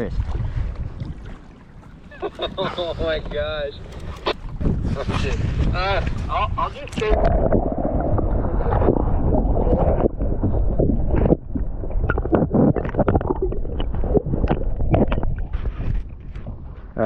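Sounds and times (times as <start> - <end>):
water sloshing and splashing: 0.0 - 16.8
low rumbling on microphone: 4.4 - 17.0.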